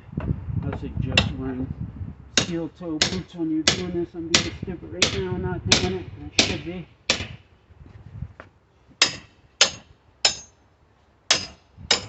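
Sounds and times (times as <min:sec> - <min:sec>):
sledgehammer striking steel bar: 0:02.4 - 0:07.4, 0:09.0 - 0:10.6, 0:11.3 - 0:12.0.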